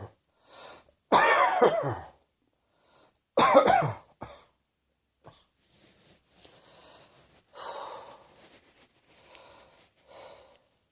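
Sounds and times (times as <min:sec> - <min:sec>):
person coughing: 0:01.1 - 0:02.2, 0:03.4 - 0:04.5
person breathing audibly: 0:05.3 - 0:10.9.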